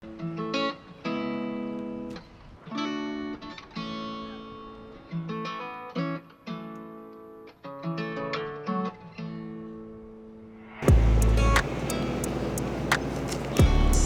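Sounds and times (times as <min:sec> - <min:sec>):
acoustic guitar strumming chords: 0:10.8 - 0:14.0.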